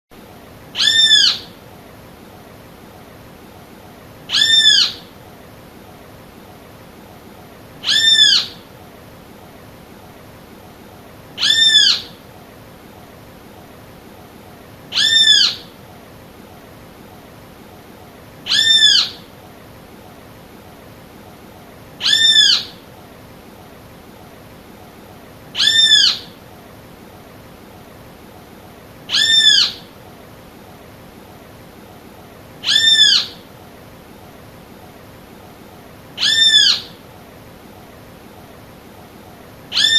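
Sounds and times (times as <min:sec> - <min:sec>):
bird call rising and falling: 0:00.8 - 0:01.5, 0:04.3 - 0:05.1, 0:07.8 - 0:08.6, 0:11.4 - 0:12.2, 0:14.9 - 0:15.7, 0:18.5 - 0:19.2, 0:29.1 - 0:29.9, 0:32.6 - 0:33.4, 0:36.2 - 0:37.0.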